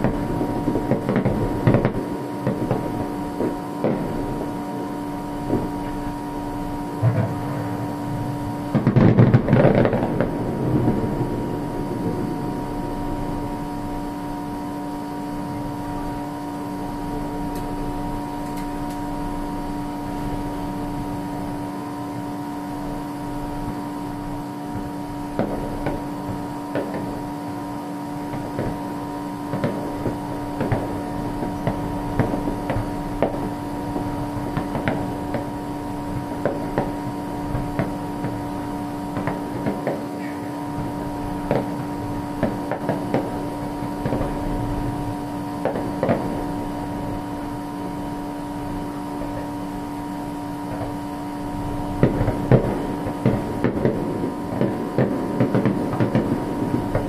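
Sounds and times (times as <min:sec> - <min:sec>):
firework pops and crackles: 0:00.0 - 0:06.3, 0:07.0 - 0:12.4, 0:20.0 - 0:57.0
loud firework burst: 0:00.0 - 0:57.0
steady hum: 0:00.0 - 0:57.0.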